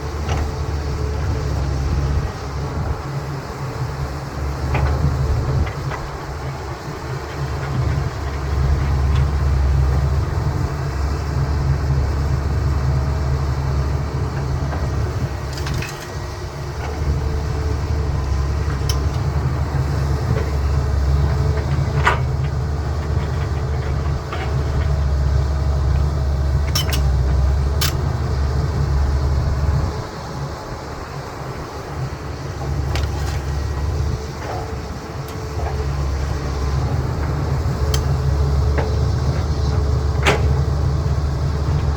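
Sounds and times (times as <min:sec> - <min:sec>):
excavator diesel engine rumbling: 0:00.0 - 0:41.9
sharp metal clanks: 0:26.7 - 0:27.2.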